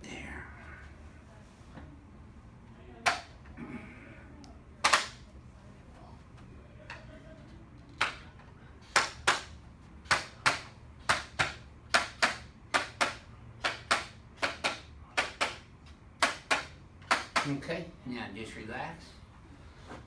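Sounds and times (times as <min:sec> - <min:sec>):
sharp slaps: 0:09.0 - 0:15.6, 0:16.2 - 0:17.6.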